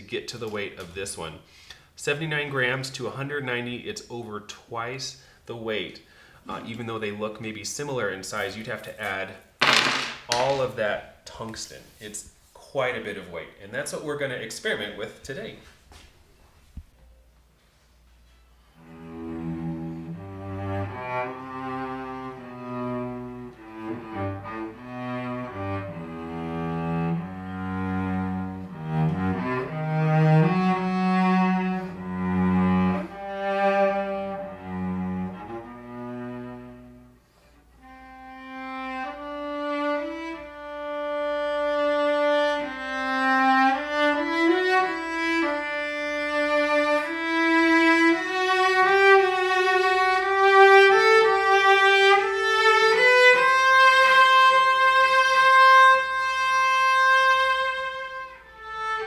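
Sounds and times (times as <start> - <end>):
bowed string melody: 18.7 - 37.2, 37.8 - 59.0
cello playing low notes: 18.7 - 59.0.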